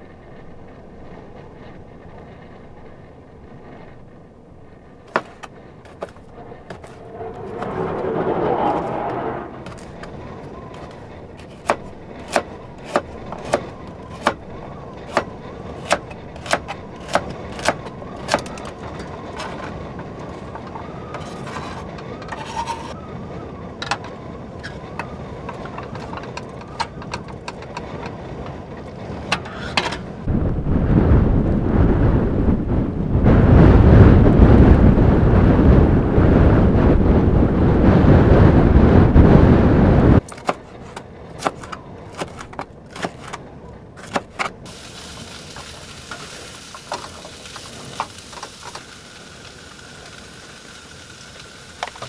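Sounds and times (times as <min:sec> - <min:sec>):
brief rush of noise: 0:07.0 - 0:09.7
knife chopping on cutting board: 0:10.8 - 0:14.4, 0:15.0 - 0:18.8, 0:40.3 - 0:43.4, 0:44.0 - 0:44.5.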